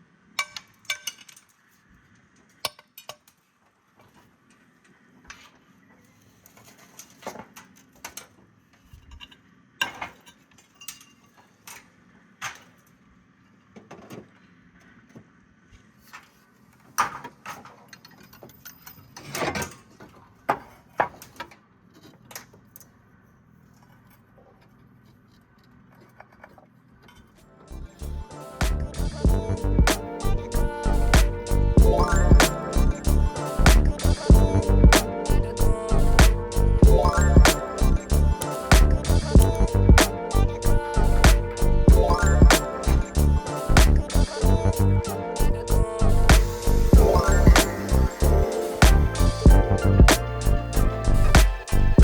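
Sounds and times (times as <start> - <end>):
roof tiles and tools clinking: 0.4 - 1.6, 9.0 - 12.8, 16.1 - 22.6.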